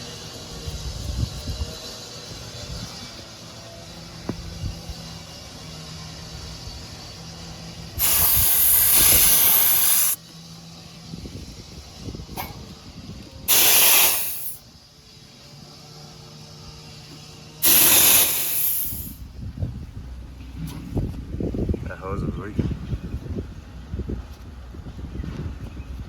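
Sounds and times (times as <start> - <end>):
pressurized gas hissing: 7.9 - 10.2, 13.5 - 14.7, 17.6 - 19.2.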